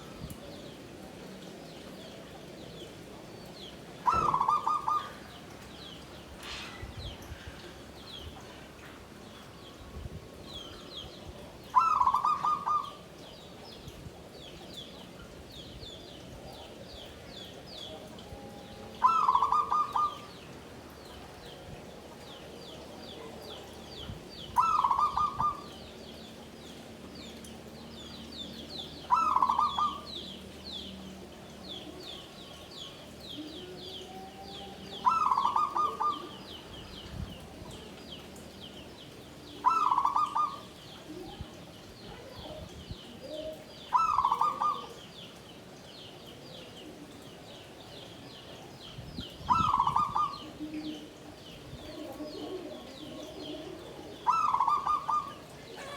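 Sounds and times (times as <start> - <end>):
faint high chirping of birds: 0.0 - 55.9
dove cooing: 4.0 - 5.4, 11.7 - 13.0, 19.0 - 20.4, 24.6 - 25.8, 29.1 - 30.1, 33.4 - 36.6, 39.6 - 41.5, 43.2 - 45.0, 49.5 - 55.9.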